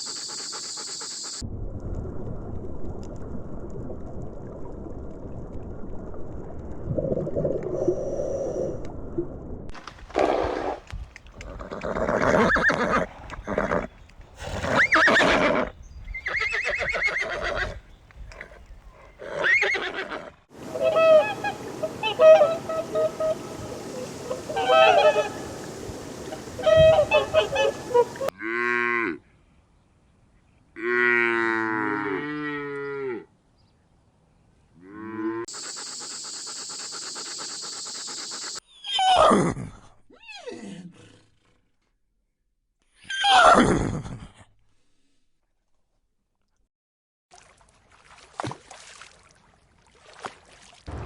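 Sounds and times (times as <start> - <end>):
high hiss with fast rattle: 35.5 - 38.6.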